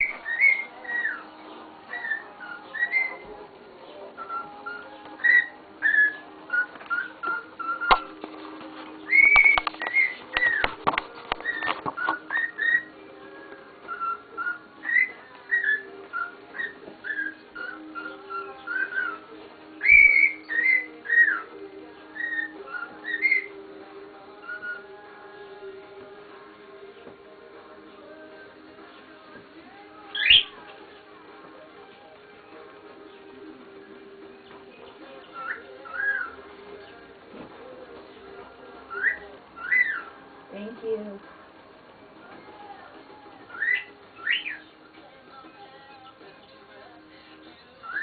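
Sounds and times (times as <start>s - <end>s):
cockatiel whistling: 0.0s - 1.3s, 1.9s - 3.2s, 4.2s - 8.1s, 9.0s - 23.6s, 24.4s - 25.0s, 30.1s - 30.6s, 35.1s - 36.9s, 38.9s - 40.2s, 43.5s - 44.7s.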